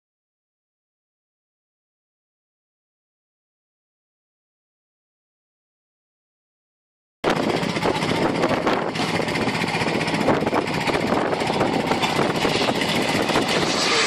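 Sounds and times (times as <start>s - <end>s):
loud rough aircraft engine: 7.2s - 14.0s.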